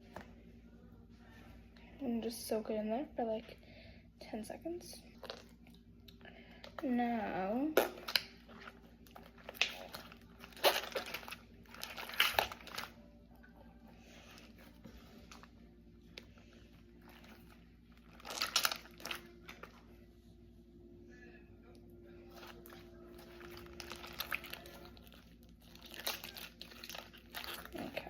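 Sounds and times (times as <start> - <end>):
slime squelching: 5.1 - 13.1, 14.0 - 20.0, 22.2 - 28.0.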